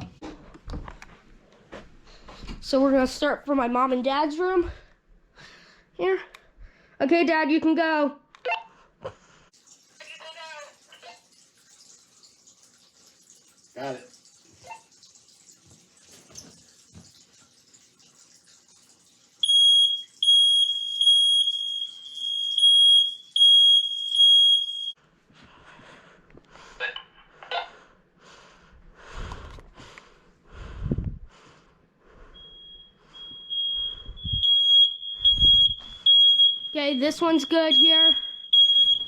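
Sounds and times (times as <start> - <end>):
smoke alarm beeping: 19.4 - 25.0, 32.4 - 39.0.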